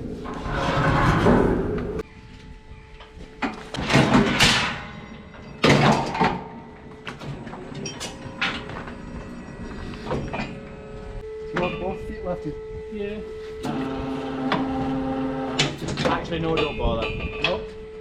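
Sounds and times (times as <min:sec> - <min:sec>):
metal clanks and bangs: 0:00.0 - 0:02.0, 0:03.4 - 0:11.0, 0:15.6 - 0:17.6.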